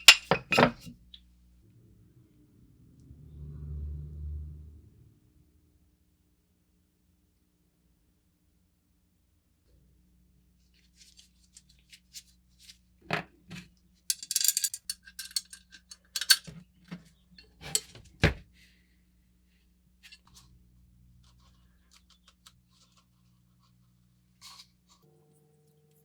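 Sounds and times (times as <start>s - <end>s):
hand tools clinking on metal: 0.0s - 0.9s, 14.1s - 16.5s.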